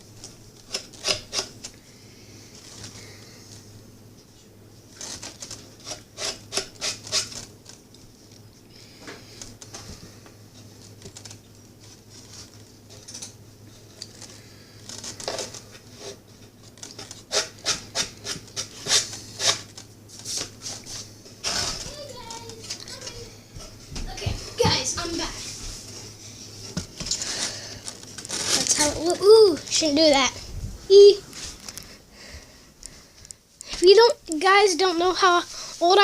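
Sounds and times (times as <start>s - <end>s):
low steady hum: 0.0s - 36.0s
hand tool scraping wood: 5.8s - 7.4s, 17.0s - 19.7s.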